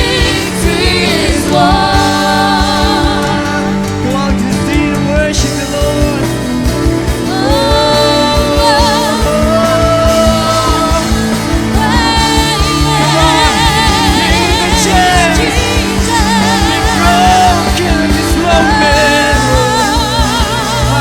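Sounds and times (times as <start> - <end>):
steady drum beat: 0.0 - 21.0
worship band playing: 0.0 - 21.0
person singing long held notes: 7.2 - 21.0.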